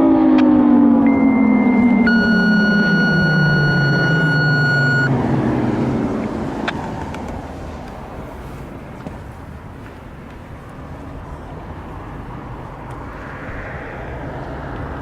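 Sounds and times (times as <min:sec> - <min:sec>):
warning siren winding down: 0:00.0 - 0:05.9
high radio tone: 0:01.1 - 0:05.1.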